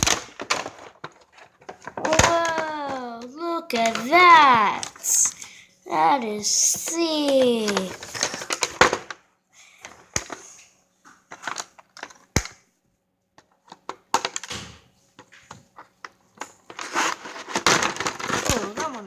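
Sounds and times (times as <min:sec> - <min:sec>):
toy packaging clicking and crinkling: 0:00.0 - 0:09.1, 0:16.5 - 0:19.0.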